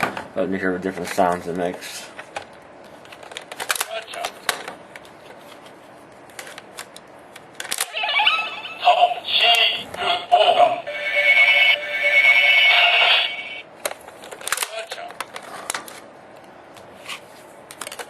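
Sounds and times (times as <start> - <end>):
toy electronic voice and jingle: 7.9 - 13.6.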